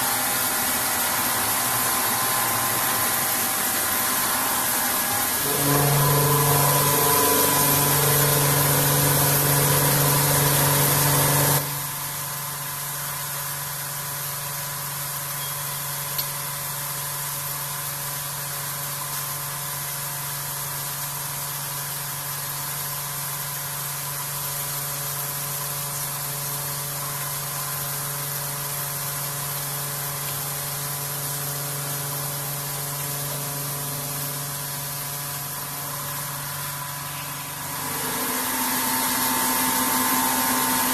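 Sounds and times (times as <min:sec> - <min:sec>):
milling machine loud hiss: 0:28.4 - 0:40.9.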